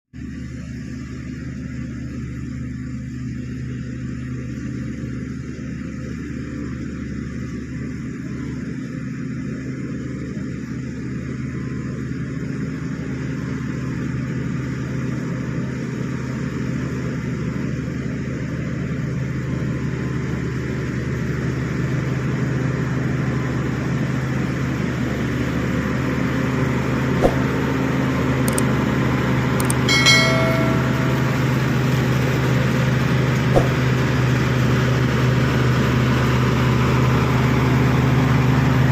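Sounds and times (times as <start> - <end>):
short ringing sound: 27.2 - 27.6, 29.6 - 32.4, 33.6 - 34.1.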